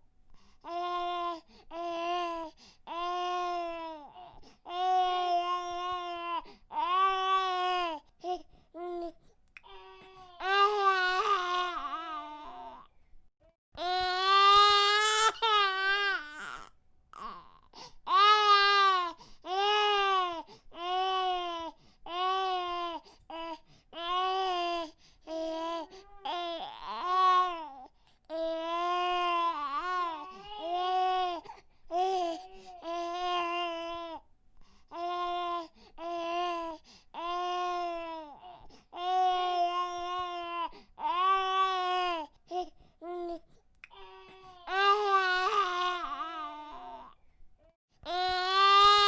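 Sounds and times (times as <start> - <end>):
infant crying: 9.7 - 12.9, 13.8 - 34.2, 34.9 - 47.2, 48.1 - 49.0.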